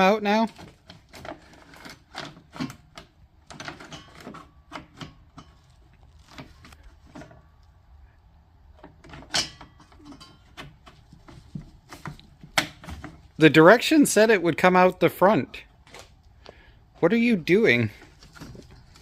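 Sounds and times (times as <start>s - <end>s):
tools clicking and knocking: 0.5s - 7.4s, 8.8s - 13.3s.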